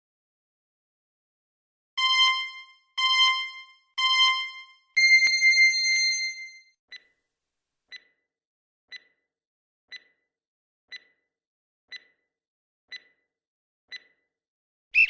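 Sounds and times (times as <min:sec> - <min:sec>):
timer ticking: 0:02.0 - 0:07.1, 0:07.9 - 0:08.3, 0:08.9 - 0:09.3, 0:09.9 - 0:10.3, 0:10.9 - 0:11.3, 0:11.9 - 0:12.3, 0:12.9 - 0:13.3, 0:13.9 - 0:14.3.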